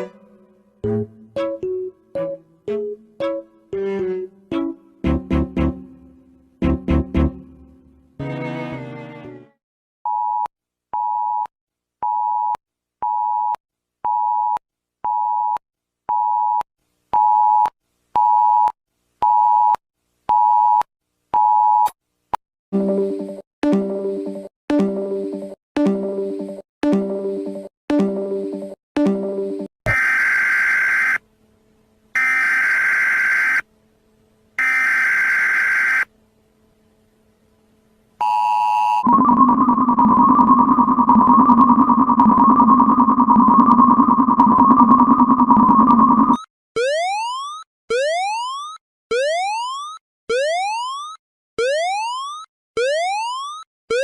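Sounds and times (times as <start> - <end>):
music: 0.0 - 9.6, 22.8 - 29.7
screeching digital data tones: 39.0 - 46.5.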